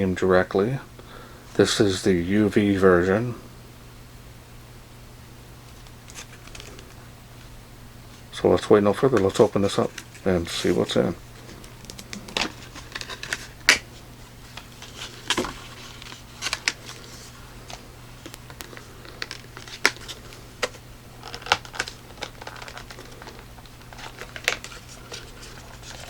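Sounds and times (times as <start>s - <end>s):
packaging clicks and taps: 11.6s - 13.8s, 17.7s - 26.0s.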